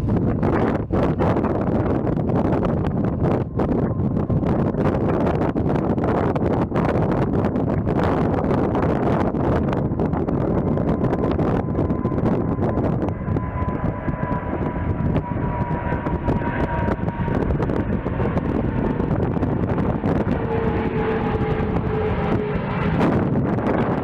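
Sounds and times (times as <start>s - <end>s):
jet engines whining: 0.0s - 24.0s
wind buffeting on microphone: 0.0s - 24.0s.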